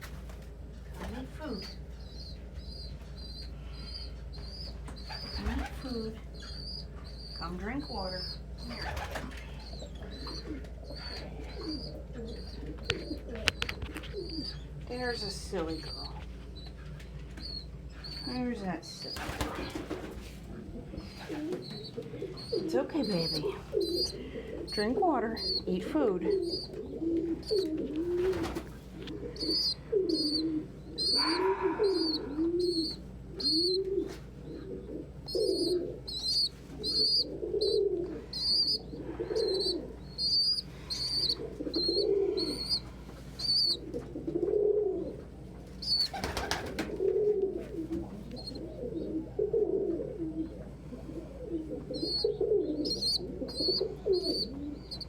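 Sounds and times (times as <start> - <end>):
pigeons cooing: 0.0 - 55.0.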